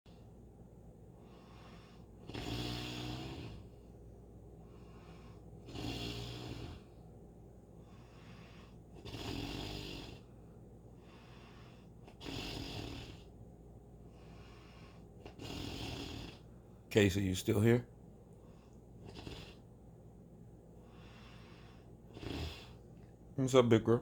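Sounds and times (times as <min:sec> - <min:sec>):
dog snoring: 0:01.2 - 0:03.9, 0:04.6 - 0:07.0, 0:07.8 - 0:10.3, 0:11.0 - 0:13.4, 0:14.1 - 0:16.5, 0:18.5 - 0:19.7, 0:20.8 - 0:22.8.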